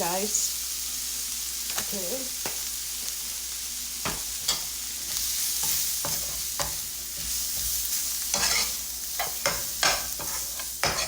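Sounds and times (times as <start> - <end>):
food sizzling in hot oil: 0.0 - 11.0
spoon scraping a pan: 4.0 - 11.0.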